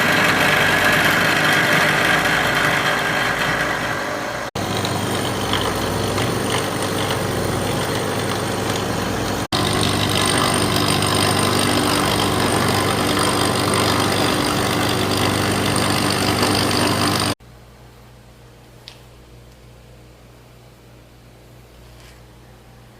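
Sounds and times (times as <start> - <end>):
machine tool humming with whine: 0.0 - 17.4.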